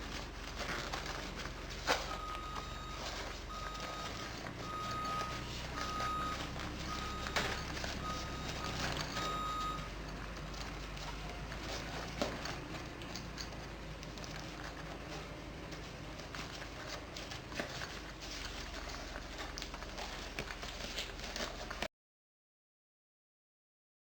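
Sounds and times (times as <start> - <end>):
vehicle reversing alarm beeps: 0.6 - 10.8.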